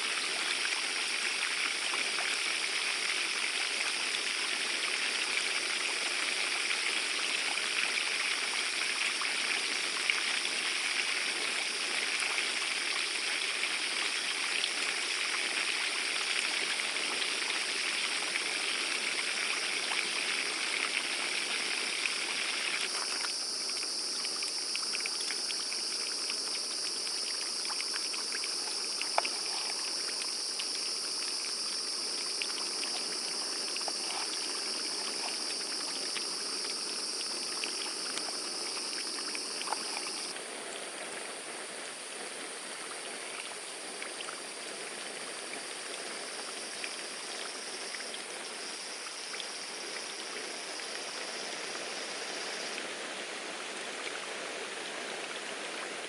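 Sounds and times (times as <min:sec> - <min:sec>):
chorus of insects: 0:00.0 - 0:56.0
steady rushing like flowing water: 0:00.0 - 0:56.0.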